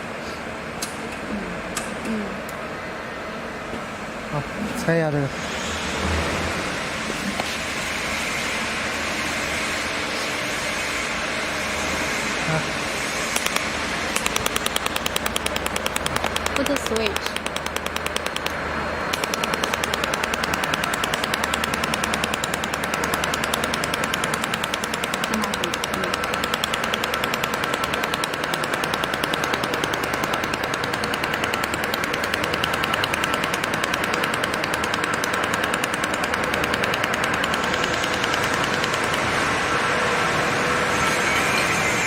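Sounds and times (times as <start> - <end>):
steady machine hum: 5.3 - 42.0
laser welder sharp clicks: 13.3 - 39.5.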